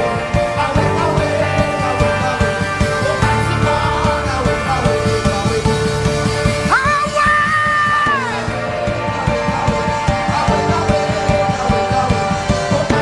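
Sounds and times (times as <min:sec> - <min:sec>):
drum and bass beat: 0:00.0 - 0:13.0
keyboard chords: 0:00.0 - 0:13.0
high voice crying out: 0:06.7 - 0:08.4.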